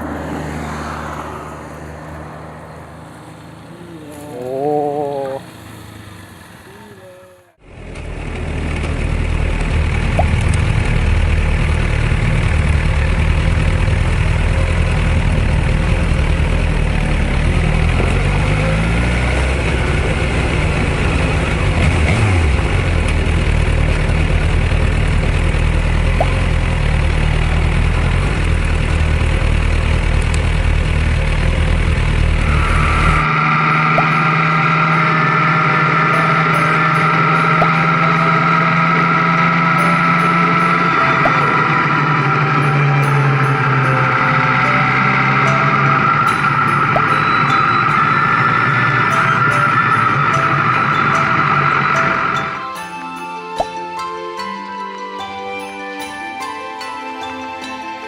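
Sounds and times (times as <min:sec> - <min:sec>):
motorcycle engine running: 0:03.3 - 0:52.9
steady hum with higher tones: 0:32.2 - 0:53.4.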